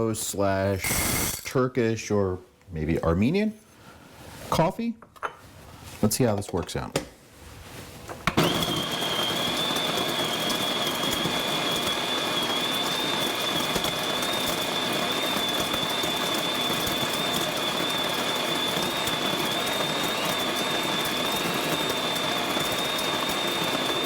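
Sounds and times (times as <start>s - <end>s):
coffee grinder grinding beans: 0.8s - 1.5s, 8.3s - 24.0s.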